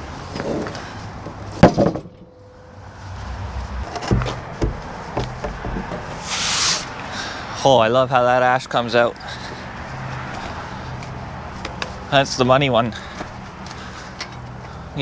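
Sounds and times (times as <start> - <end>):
heavy slabs thumping: 3.8 - 6.6.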